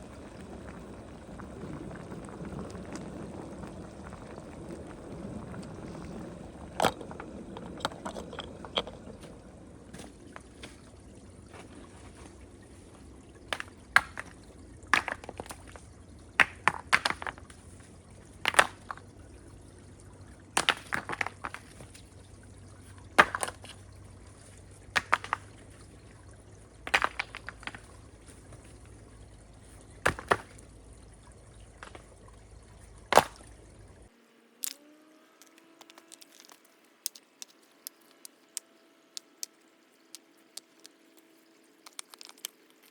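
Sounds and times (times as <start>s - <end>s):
liquid splashing and pouring: 0.0s - 34.1s
low boiling simmer: 0.0s - 34.1s.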